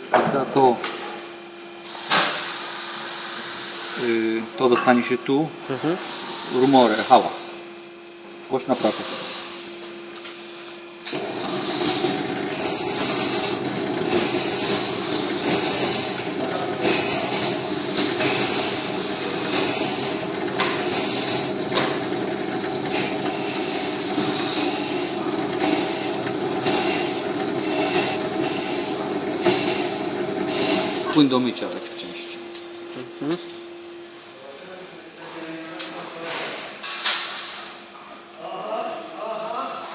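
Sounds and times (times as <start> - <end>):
gearbox motor humming: 11.1 - 31.5.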